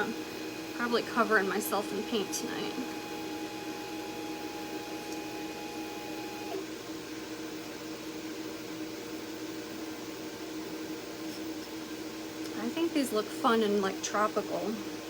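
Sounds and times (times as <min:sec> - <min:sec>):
machine high whine: 0:00.0 - 0:08.3
cutting machine motor hum: 0:00.0 - 0:15.0.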